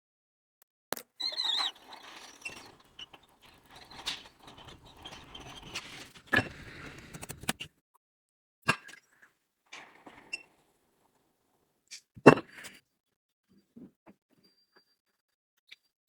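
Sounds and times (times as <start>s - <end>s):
scratchy scraping: 1.0s - 7.7s, 9.7s - 11.2s
high wavering squeak: 1.2s - 6.6s.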